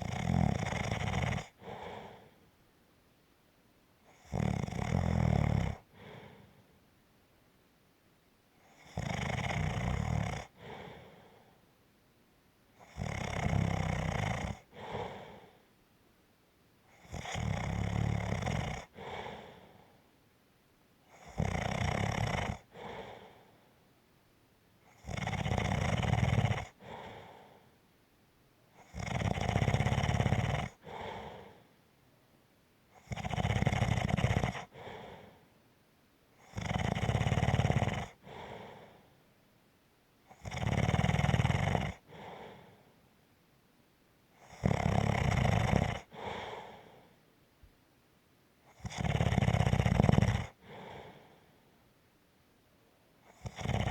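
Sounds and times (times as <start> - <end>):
loud snoring: 0.0 - 2.3, 4.1 - 6.4, 8.6 - 11.2, 12.8 - 15.5, 16.9 - 19.6, 21.1 - 23.4, 24.9 - 27.6, 28.8 - 31.6, 33.0 - 35.4, 36.4 - 39.0, 40.3 - 42.8, 44.4 - 47.0, 48.7 - 51.3, 53.2 - 53.9
faint breath: 1.5 - 2.7, 5.8 - 7.0, 10.4 - 11.8, 14.6 - 15.8, 18.8 - 20.2, 22.6 - 23.9, 26.7 - 27.9, 30.7 - 31.9, 34.6 - 35.6, 38.1 - 39.4, 42.0 - 43.2, 46.0 - 47.4, 50.5 - 52.0.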